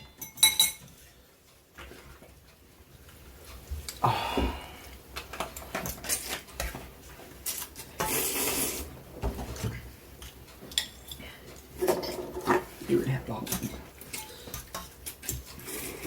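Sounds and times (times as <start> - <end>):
forks clinking against bowls: 0.0 - 1.0.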